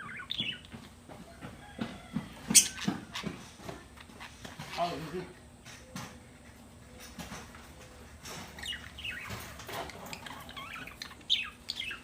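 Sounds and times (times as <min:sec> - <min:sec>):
lovebirds chirping: 0:00.0 - 0:00.8, 0:06.8 - 0:12.0.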